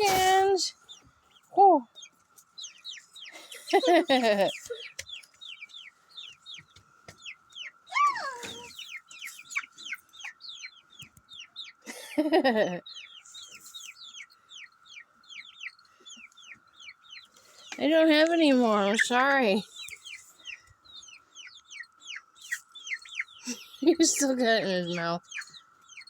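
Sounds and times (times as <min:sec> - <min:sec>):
chicks peeping: 0:00.0 - 0:26.0.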